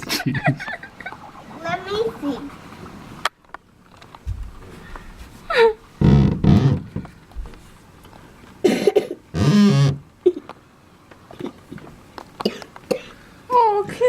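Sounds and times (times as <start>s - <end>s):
child coughing: 8.6s - 9.2s, 12.4s - 13.1s.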